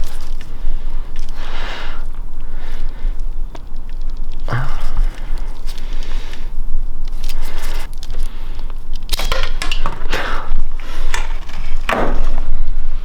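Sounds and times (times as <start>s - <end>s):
steady low hum: 0.0s - 13.0s
metal parts and tools clicking: 8.9s - 12.3s.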